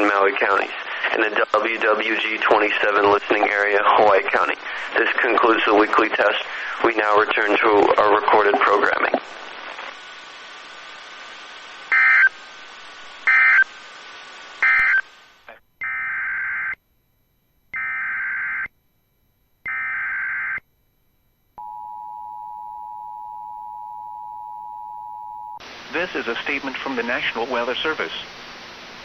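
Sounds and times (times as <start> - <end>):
radio hiss: 0.0 - 16.0, 25.6 - 29.0
screeching digital data bursts: 11.9 - 12.4, 13.3 - 13.7, 14.6 - 15.1.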